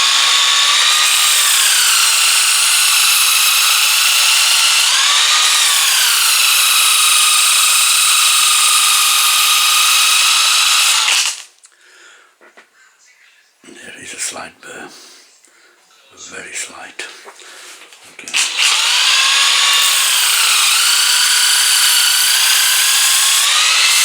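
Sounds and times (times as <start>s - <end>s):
power tool high whine: 0.0s - 11.5s, 18.3s - 24.0s.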